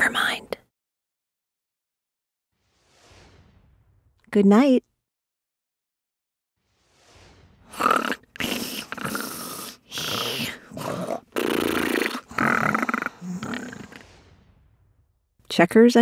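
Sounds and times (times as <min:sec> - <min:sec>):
person imitating snoring: 0:07.7 - 0:14.0.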